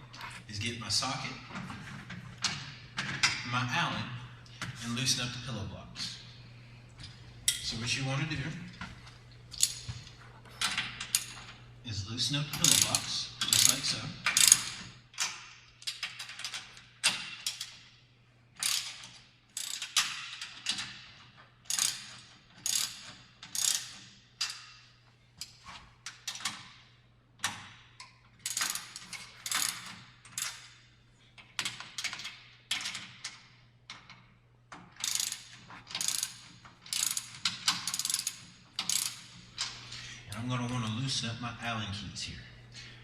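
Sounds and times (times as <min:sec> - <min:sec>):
faint steady hum: 0:00.0 - 0:43.0
ratchet wrench clicking: 0:12.6 - 0:17.8, 0:18.6 - 0:20.9, 0:21.7 - 0:24.7, 0:28.4 - 0:30.7, 0:35.0 - 0:39.4.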